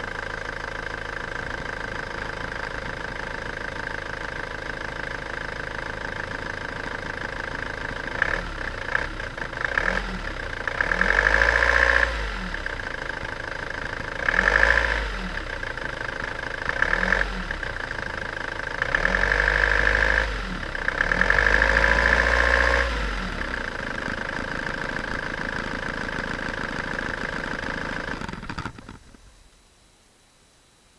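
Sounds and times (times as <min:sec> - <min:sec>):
engine idling and revving: 0:00.0 - 0:29.3.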